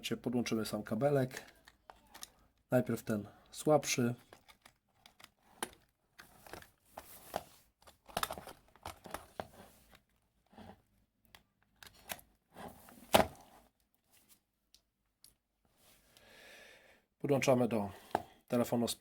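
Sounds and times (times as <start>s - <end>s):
cable rustling and scraping: 3.8s - 10.9s.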